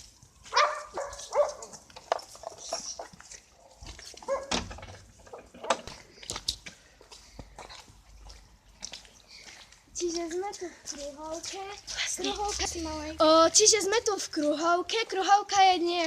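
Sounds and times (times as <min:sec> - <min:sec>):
dog barking: 0:00.5 - 0:01.8, 0:04.2 - 0:04.6.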